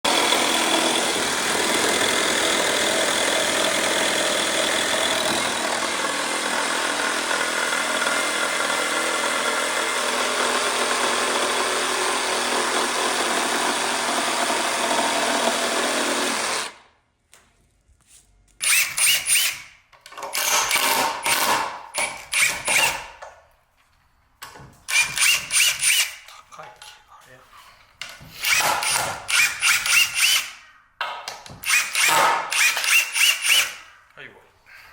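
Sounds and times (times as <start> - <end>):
power tool running: 0.1 - 16.8, 31.6 - 33.9.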